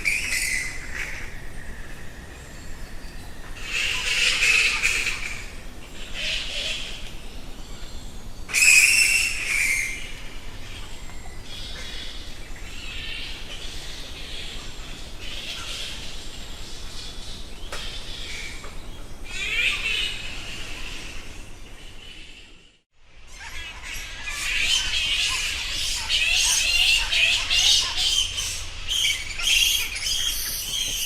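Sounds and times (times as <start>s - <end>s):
bats squeaking and chittering: 23.3s - 31.0s.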